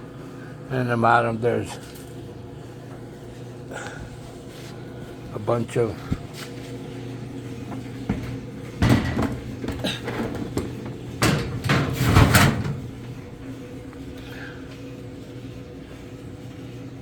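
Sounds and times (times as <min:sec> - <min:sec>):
tools clattering in drawer: 0:08.8 - 0:12.9
metal drawer pulled open: 0:08.8 - 0:13.1.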